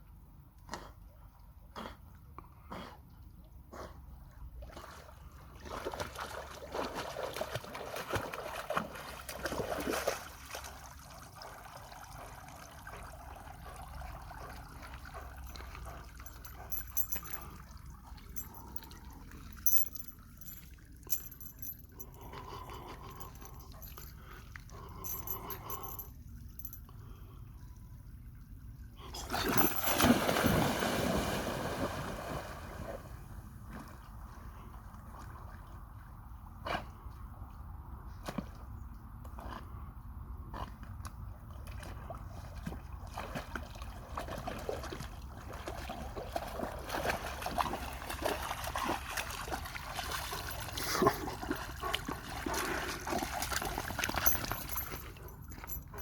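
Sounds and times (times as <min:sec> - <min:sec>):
water splashing around swimming dog: 0:04.6 - 0:19.6, 0:29.1 - 0:36.9, 0:40.7 - 0:55.8
water lapping: 0:04.6 - 0:26.0, 0:29.0 - 0:36.1, 0:41.6 - 0:56.0.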